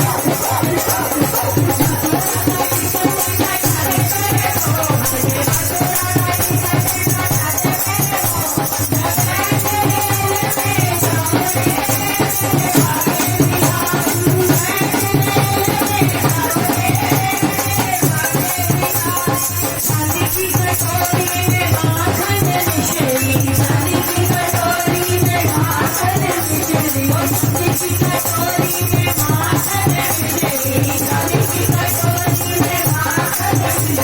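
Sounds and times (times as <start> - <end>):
devotional song melody: 0.0 - 34.0
percussion beat: 0.0 - 34.0.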